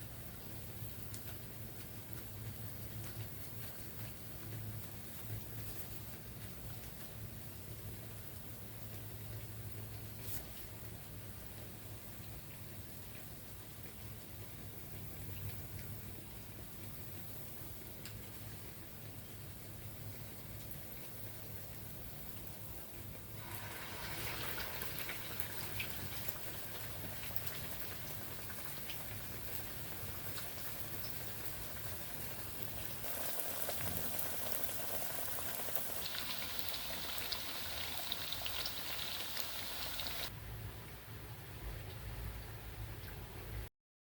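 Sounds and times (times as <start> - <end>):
food sizzling in hot oil: 23.3 - 40.3.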